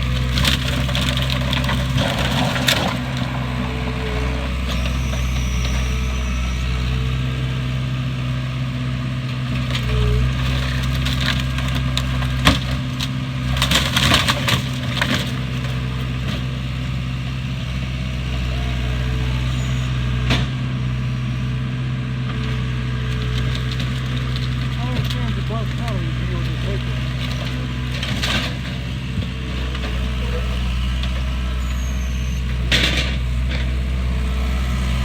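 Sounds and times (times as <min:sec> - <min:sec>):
wood and debris breaking: 0:00.0 - 0:03.6, 0:09.7 - 0:15.9, 0:23.2 - 0:30.1
heavy machine engine running: 0:00.0 - 0:35.0.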